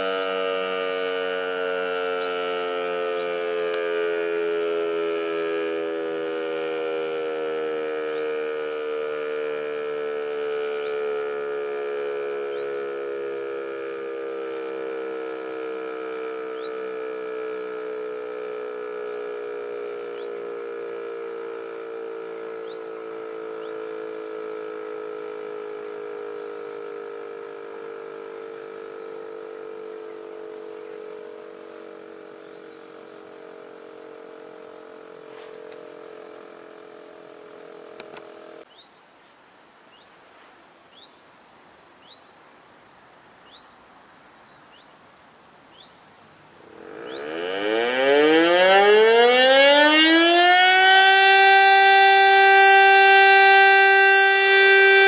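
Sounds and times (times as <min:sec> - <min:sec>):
siren sinking in pitch: 0:00.0 - 0:38.7, 0:46.6 - 0:55.0.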